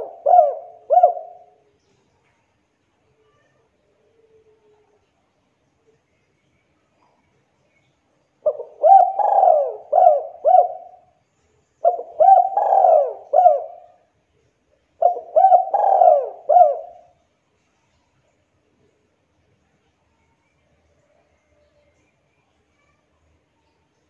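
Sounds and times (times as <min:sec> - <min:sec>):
dove cooing: 0:00.0 - 0:01.6, 0:08.4 - 0:11.0, 0:11.8 - 0:14.0, 0:15.0 - 0:17.1.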